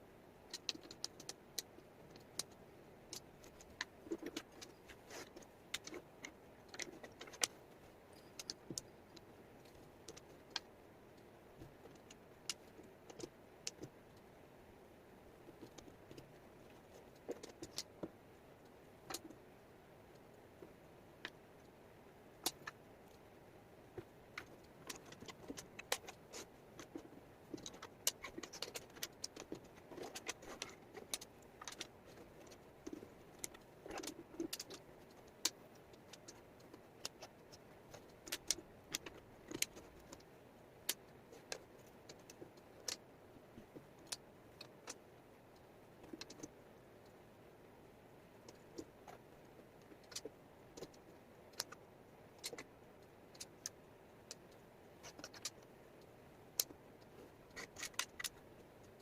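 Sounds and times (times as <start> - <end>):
faint background hiss: 0.0 - 59.0
wooden puzzle pieces clicking: 0.5 - 7.6, 24.0 - 43.0, 46.0 - 46.5, 49.8 - 52.7, 53.3 - 55.7, 57.5 - 59.0.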